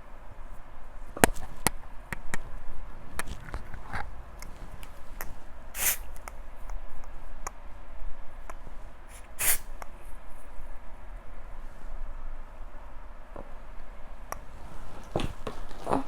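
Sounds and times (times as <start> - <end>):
hair spray spritzes: 5.8 - 6.2, 9.1 - 9.8.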